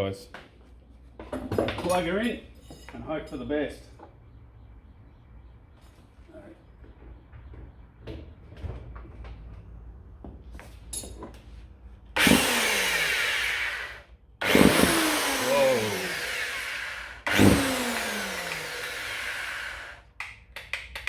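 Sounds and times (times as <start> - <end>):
angle grinder running harshly: 12.2 - 20.1.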